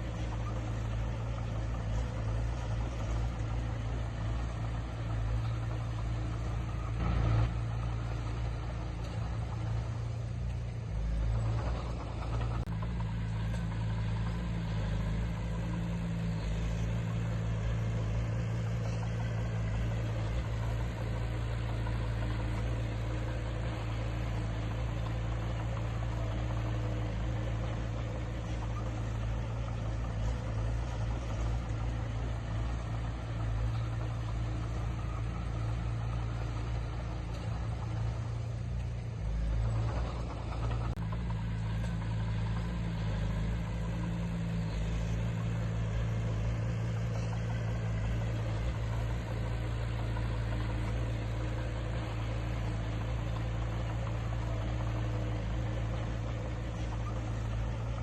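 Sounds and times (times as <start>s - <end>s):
diesel engine droning: 0.0s - 58.0s.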